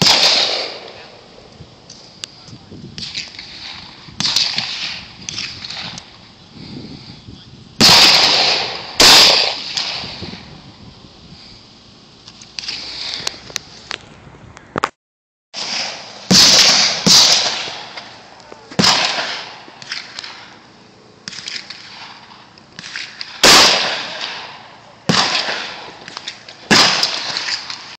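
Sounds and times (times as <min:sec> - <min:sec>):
gunshots echoing: 0:00.0 - 0:01.4, 0:03.0 - 0:06.1, 0:07.8 - 0:10.3, 0:15.6 - 0:20.6, 0:21.2 - 0:28.0.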